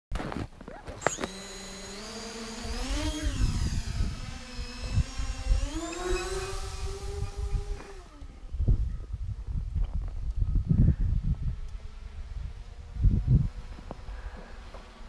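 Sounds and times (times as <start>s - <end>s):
drone motors whining: 0.6s - 15.0s
wind rumble on microphone: 2.7s - 14.4s.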